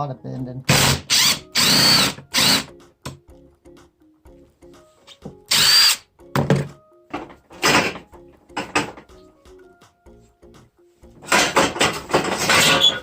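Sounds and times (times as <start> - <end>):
electric drill whining: 0.7 - 2.7, 5.5 - 6.0.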